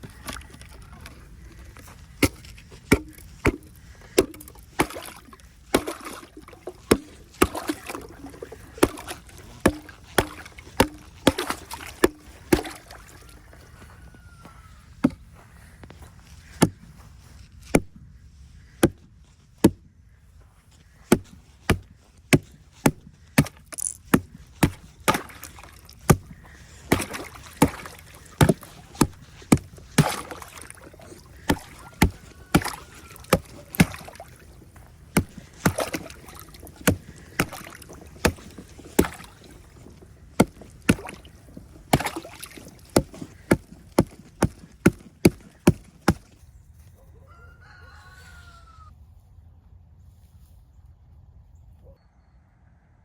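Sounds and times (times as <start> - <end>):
ice crunching and cracking: 0.0 - 14.0, 20.7 - 46.5.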